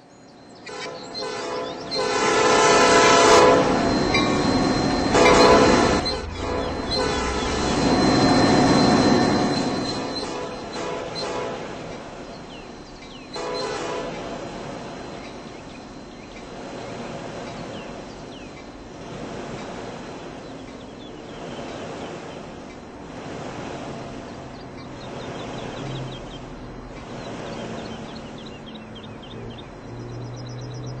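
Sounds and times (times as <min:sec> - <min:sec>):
train wheels rumbling on rail: 0:00.7 - 0:31.0
high squeaks: 0:02.9 - 0:11.2.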